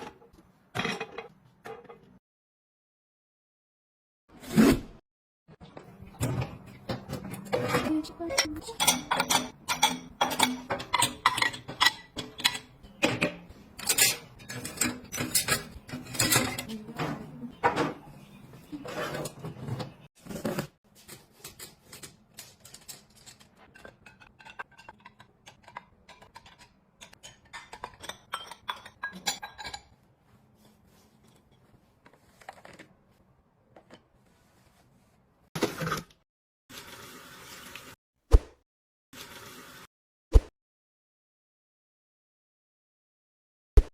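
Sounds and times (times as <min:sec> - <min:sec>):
dishes and utensils clinking: 0:00.8 - 0:02.0, 0:05.8 - 0:20.1, 0:21.4 - 0:30.0.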